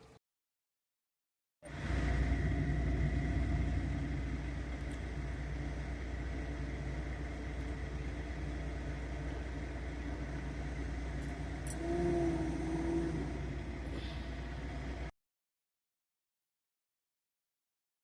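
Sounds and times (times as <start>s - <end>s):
road noise: 1.6s - 15.1s
truck engine rumble: 1.6s - 15.1s
wavering tone: 11.2s - 14.0s.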